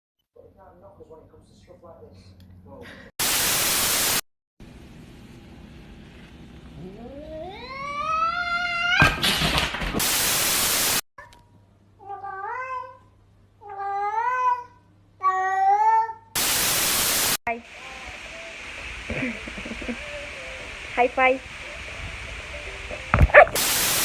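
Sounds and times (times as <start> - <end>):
static hiss: 3.2 - 4.2, 10.0 - 11.0, 16.4 - 24.0
cat yowling: 6.9 - 9.2
cat meowing: 7.1 - 9.1.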